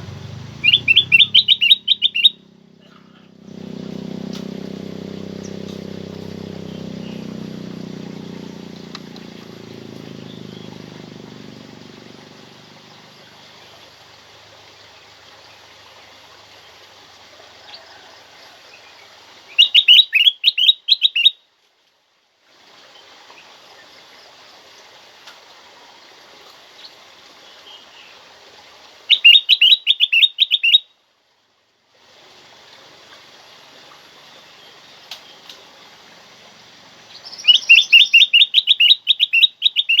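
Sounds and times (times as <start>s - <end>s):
faint bird calls: 0.0s - 14.0s, 19.5s - 21.3s, 29.1s - 30.8s, 37.1s - 40.0s
steady background hiss: 0.0s - 40.0s
bulbul chirping rapidly: 0.6s - 2.4s, 19.6s - 21.3s, 29.1s - 30.8s, 37.2s - 40.0s.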